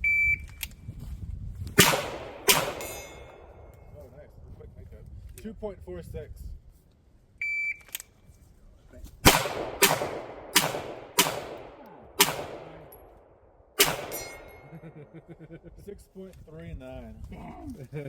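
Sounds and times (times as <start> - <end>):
shot timer beep: 0.0 - 0.5
pistol shots with echo: 1.8 - 3.7, 9.2 - 15.0.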